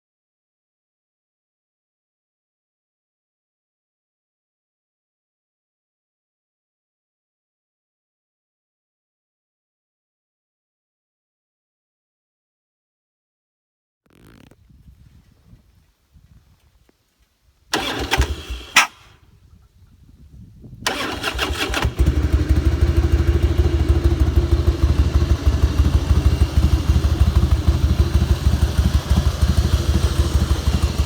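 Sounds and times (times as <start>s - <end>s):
motorcycle engine cranking: 17.7s - 19.2s, 20.9s - 31.0s
motorcycle engine idling unevenly: 20.9s - 31.0s.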